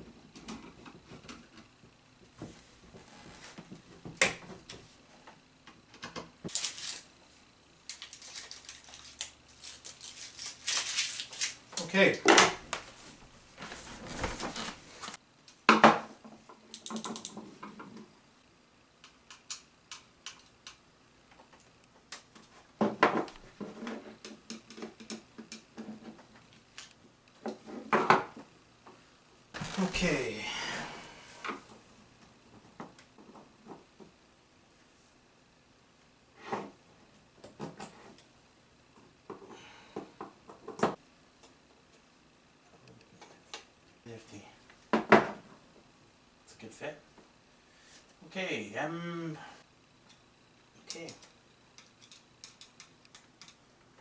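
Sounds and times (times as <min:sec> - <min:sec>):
small plastic parts knocking and clicking: 0:16.5 - 0:18.1, 0:19.0 - 0:26.2, 0:50.9 - 0:53.6
parts clicking: 0:50.9 - 0:53.6.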